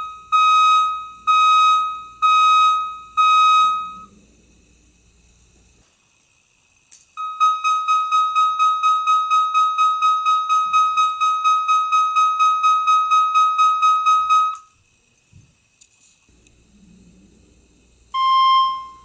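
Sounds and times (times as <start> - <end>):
pulsing high alarm tone: 0.0 - 4.1, 7.2 - 14.6.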